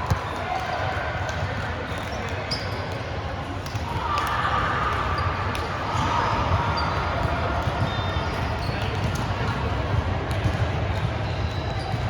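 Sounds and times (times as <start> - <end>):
gym hall noise: 0.0 - 12.0
shoe squeaks: 2.0 - 2.8.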